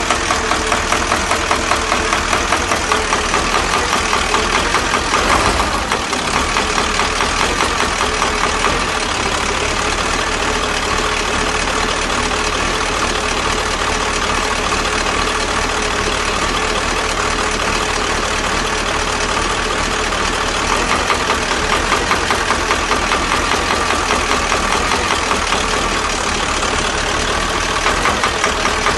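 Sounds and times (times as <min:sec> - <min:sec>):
diesel truck engine idling: 0:00.0 - 0:28.9
rhythmic engine knock: 0:00.0 - 0:28.9.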